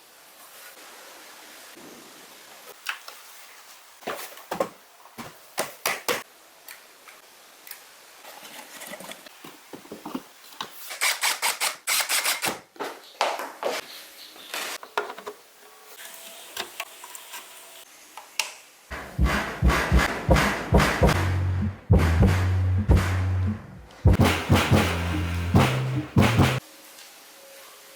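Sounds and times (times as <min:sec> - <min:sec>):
loud music with thumping bass: 0:19.0 - 0:26.6.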